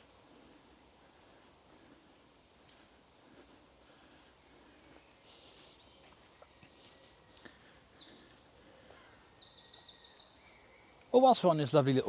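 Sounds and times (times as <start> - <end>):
faint outdoor background noise: 0.0 - 12.0
small songbird singing: 3.5 - 11.4.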